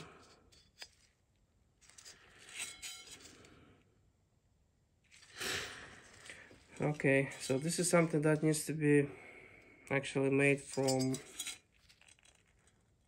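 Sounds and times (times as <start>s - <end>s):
metal parts scraping: 0.0s - 1.2s, 1.8s - 3.5s, 10.5s - 12.8s.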